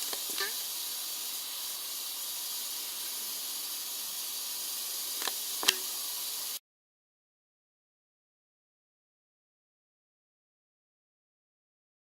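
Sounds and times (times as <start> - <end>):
rattlesnake tail rattling: 0.0 - 6.6.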